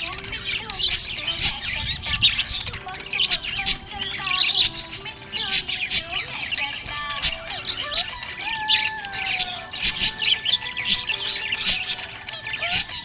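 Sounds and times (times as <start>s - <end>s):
budgies chattering and warbling: 0.0s - 13.0s.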